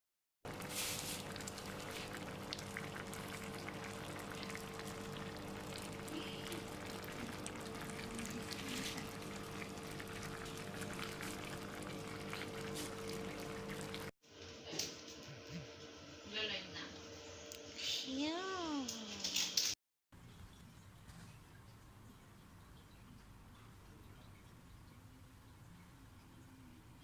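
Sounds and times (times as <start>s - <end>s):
food sizzling in a pan: 0.5s - 15.0s.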